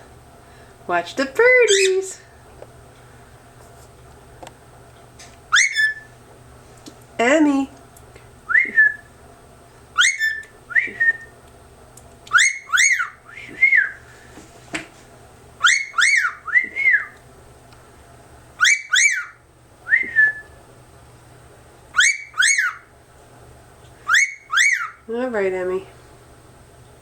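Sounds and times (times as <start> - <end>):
cockatiel whistled chirps: 5.5 - 6.1, 8.5 - 9.1, 10.0 - 11.3, 12.3 - 14.0, 15.6 - 17.2, 18.6 - 20.6, 21.9 - 22.8, 24.0 - 25.0.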